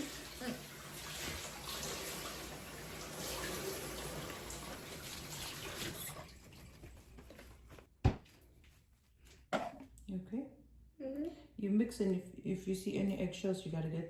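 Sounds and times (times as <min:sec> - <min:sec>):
tap water splashing into sink: 0:00.0 - 0:06.2.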